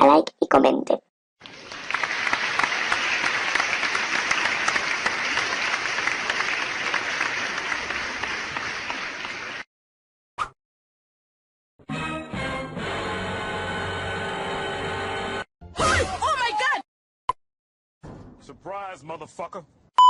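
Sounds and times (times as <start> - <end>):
crowd applause: 1.4 - 9.7.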